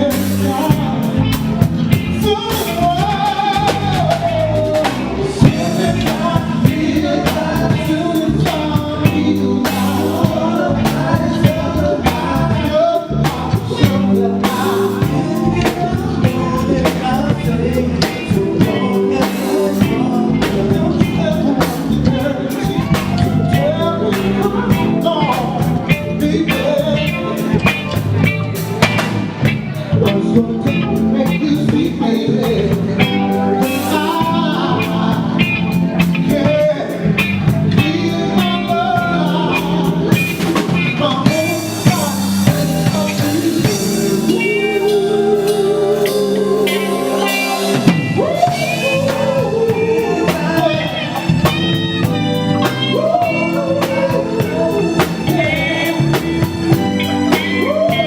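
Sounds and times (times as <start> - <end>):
drum rimshots: 0.0 - 32.0, 46.0 - 58.0
live band playing soul music: 0.0 - 58.0.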